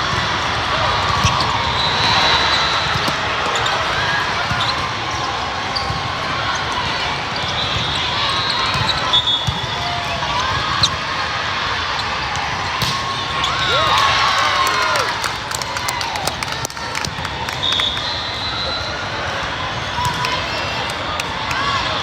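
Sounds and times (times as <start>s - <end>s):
crowd chatter: 0.0s - 22.0s
volleyball hits: 12.3s - 14.8s.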